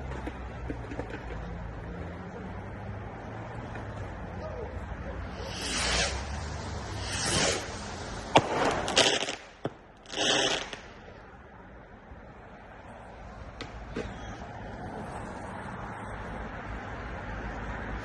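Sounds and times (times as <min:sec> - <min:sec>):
fireworks hissing: 0:05.1 - 0:11.2
fireworks banging: 0:05.2 - 0:11.2
faint fireworks pops: 0:05.4 - 0:11.1.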